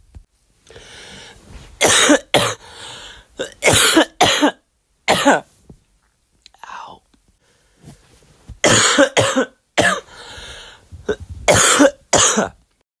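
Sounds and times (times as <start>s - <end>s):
person coughing harshly: 1.8s - 2.7s, 3.4s - 5.5s, 8.6s - 12.6s
breath drawn in: 10.1s - 11.5s.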